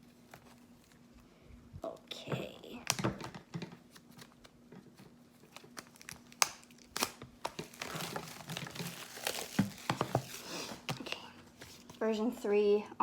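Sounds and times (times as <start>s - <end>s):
packaging crinkling and rustling: 2.8s - 12.0s.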